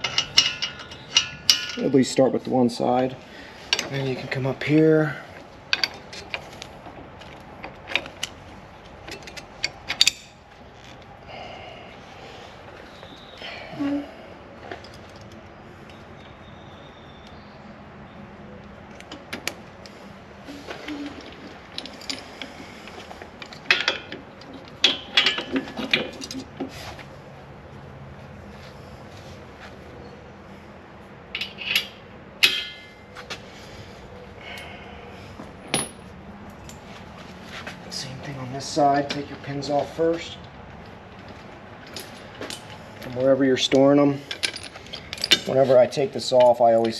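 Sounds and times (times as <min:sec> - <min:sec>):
metal clinking and clanking: 0:00.0 - 0:02.1, 0:05.7 - 0:11.0, 0:18.9 - 0:26.7, 0:31.3 - 0:33.2, 0:35.6 - 0:36.9, 0:41.2 - 0:46.9.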